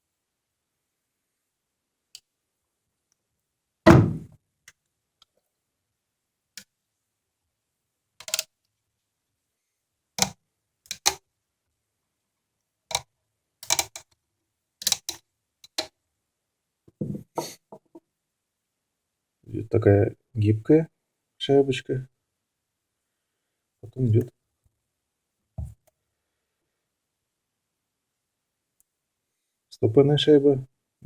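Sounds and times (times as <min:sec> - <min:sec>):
heavy thunk: 0:03.9 - 0:04.4.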